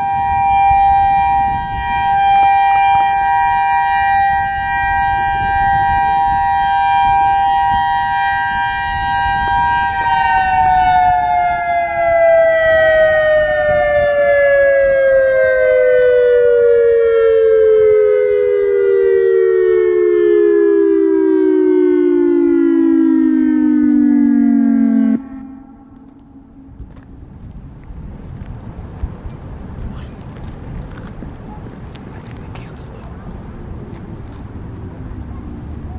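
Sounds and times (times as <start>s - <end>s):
electronic warning siren: 0.0s - 27.1s.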